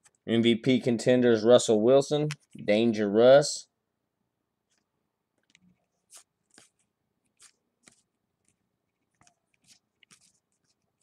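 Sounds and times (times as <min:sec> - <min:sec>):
trading cards flipped by hand: 0:04.7 - 0:11.0.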